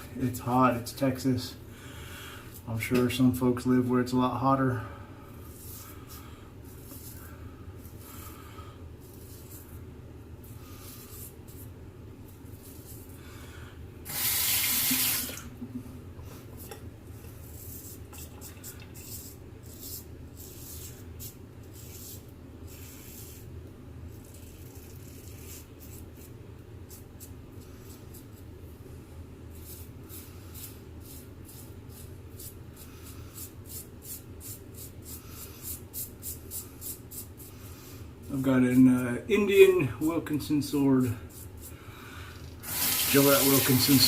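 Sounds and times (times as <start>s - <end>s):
tap water running: 14.1s - 15.5s, 42.6s - 44.0s
razor scraping stubble: 24.2s - 26.3s.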